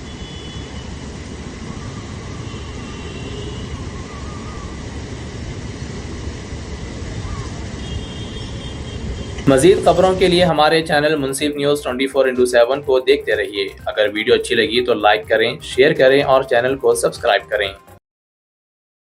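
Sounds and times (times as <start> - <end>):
rumble of traffic: 0.0 - 14.4.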